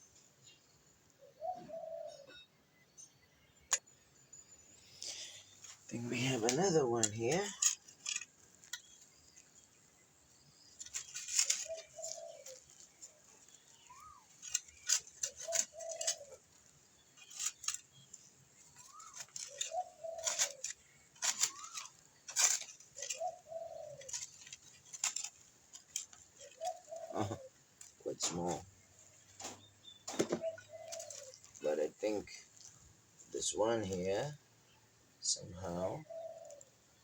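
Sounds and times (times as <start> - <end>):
dove cooing: 1.2 - 2.5, 10.8 - 32.6, 35.3 - 36.8
digging in soil: 5.0 - 34.2.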